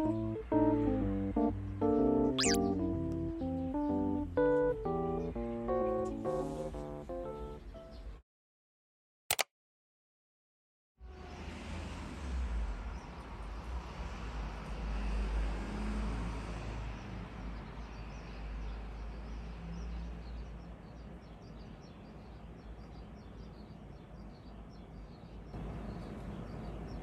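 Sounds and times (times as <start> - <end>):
small birds chirping: 1.7 - 5.9, 7.3 - 8.2, 16.9 - 27.0.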